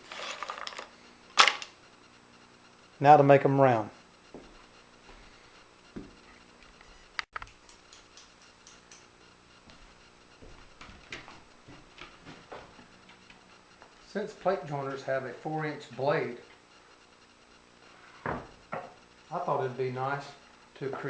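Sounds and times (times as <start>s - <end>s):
faint steady hum: 0.0s - 21.0s
small objects tapping and clicking: 7.2s - 9.1s.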